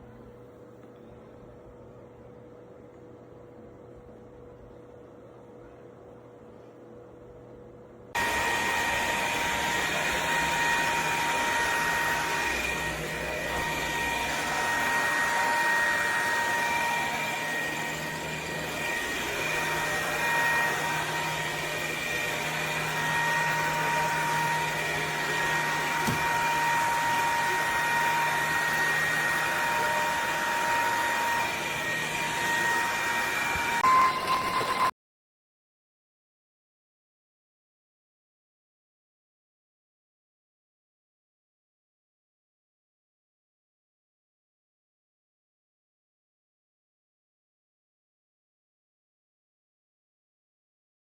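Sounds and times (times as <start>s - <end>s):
stick vacuum motor whine: 8.2s - 34.9s.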